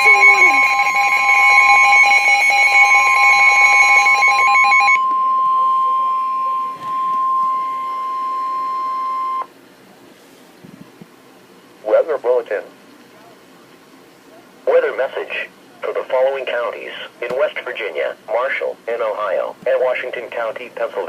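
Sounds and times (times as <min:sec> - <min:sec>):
two-tone alarm: 0:00.0 - 0:09.5.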